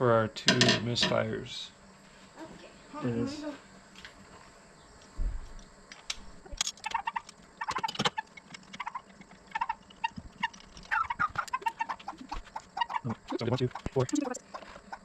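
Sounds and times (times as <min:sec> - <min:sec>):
poultry calling: 0:06.8 - 0:15.0.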